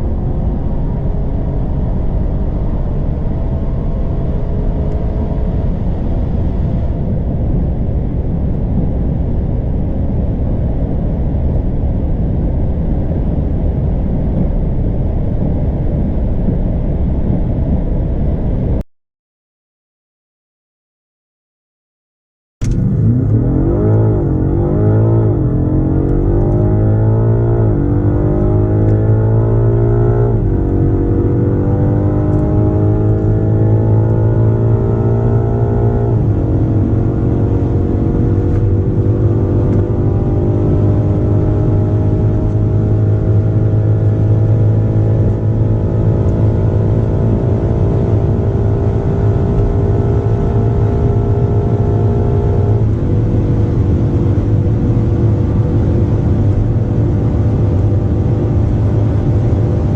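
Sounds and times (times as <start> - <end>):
car engine accelerating through gears: 0.0 - 9.3, 22.6 - 59.9.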